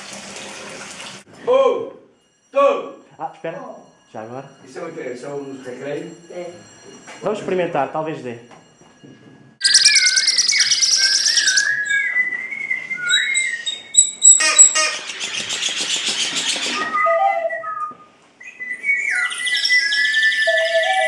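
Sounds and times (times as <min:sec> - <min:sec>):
bird-like whistling and chirping: 0:09.6 - 0:21.0.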